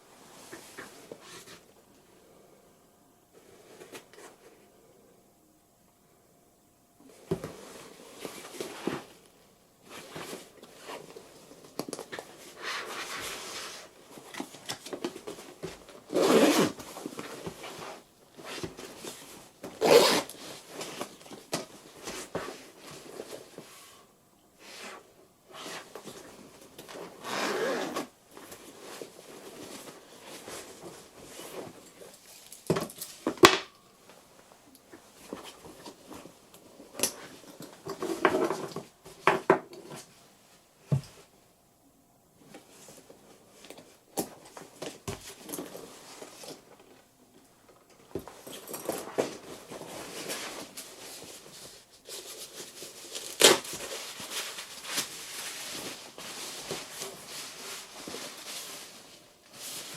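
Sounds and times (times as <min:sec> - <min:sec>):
zippers pulled: 0:16.1 - 0:16.8, 0:19.8 - 0:20.4, 0:27.2 - 0:28.1
fabric rustling: 0:48.2 - 0:59.9.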